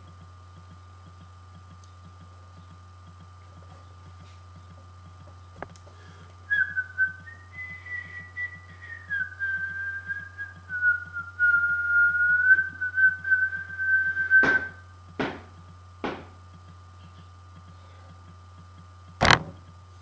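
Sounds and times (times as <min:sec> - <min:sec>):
person whistling long note: 0:06.5 - 0:14.8
heavy thumps from floor above: 0:14.4 - 0:16.4, 0:19.2 - 0:19.6.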